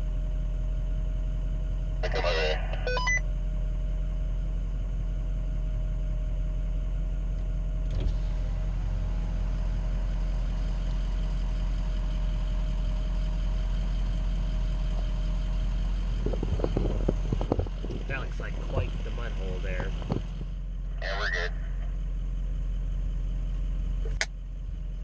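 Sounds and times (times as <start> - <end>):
pickup engine idling: 0.0 - 25.0.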